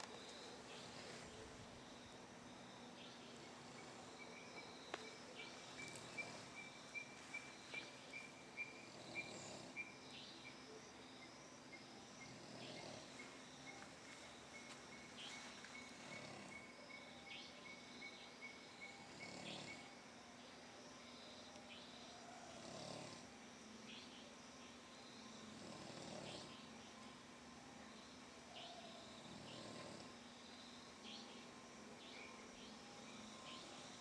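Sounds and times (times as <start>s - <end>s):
faint snoring breaths: 8.8s - 9.9s, 15.9s - 16.8s, 18.9s - 20.0s, 22.5s - 23.3s, 25.3s - 26.7s, 29.0s - 30.5s.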